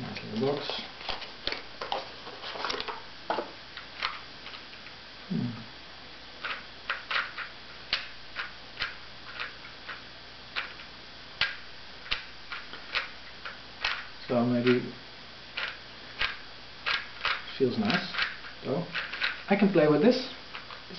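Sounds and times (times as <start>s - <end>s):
speed cube clicking: 6.4s - 14.8s, 15.6s - 19.5s, 20.5s - 20.9s.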